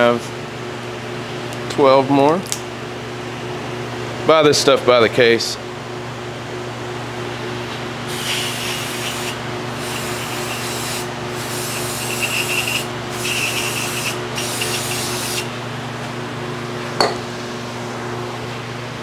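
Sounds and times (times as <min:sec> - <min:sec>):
steady shop hum: 0:00.0 - 0:19.0
aerosol can spraying: 0:08.2 - 0:11.1.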